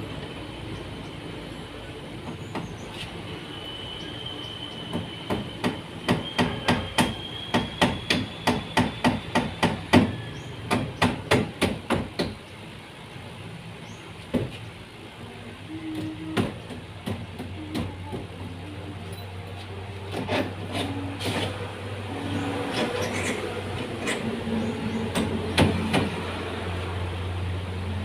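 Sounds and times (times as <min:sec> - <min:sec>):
hammer blows on wood: 0:04.9 - 0:10.1.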